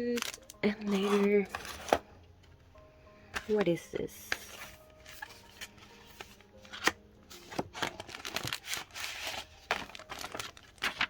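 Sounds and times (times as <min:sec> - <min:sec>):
packaging crinkling and tearing: 0:00.0 - 0:02.0, 0:04.3 - 0:11.0.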